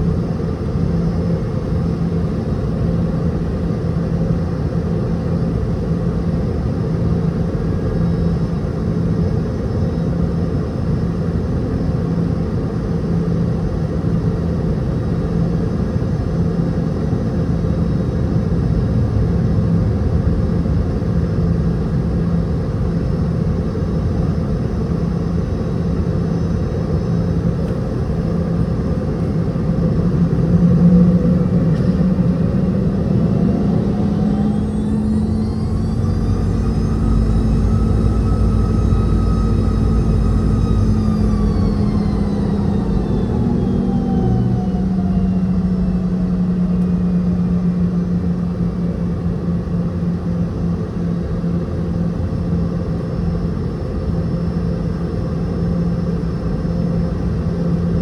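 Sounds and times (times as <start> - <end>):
jet engine cabin rumble: 0.0 - 58.0
rising tone: 29.2 - 50.0.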